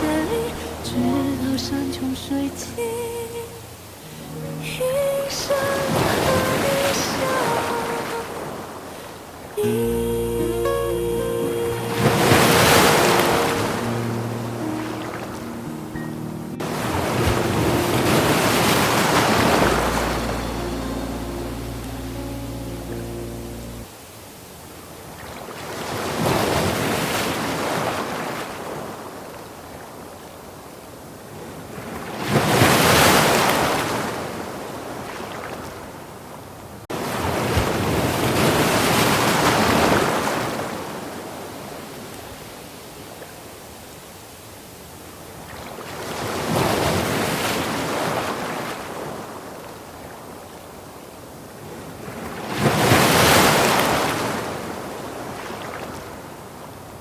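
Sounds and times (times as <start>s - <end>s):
waves breaking on beach: 2.5s - 9.8s, 11.8s - 22.3s, 23.7s - 57.0s.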